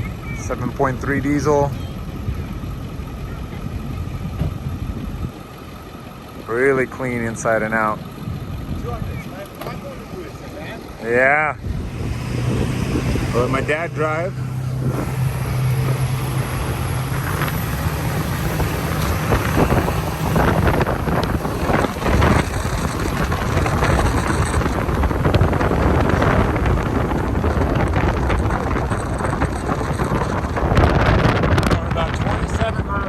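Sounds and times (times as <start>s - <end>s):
truck engine humming: 0.0s - 33.0s
wind buffeting microphone: 11.6s - 33.0s.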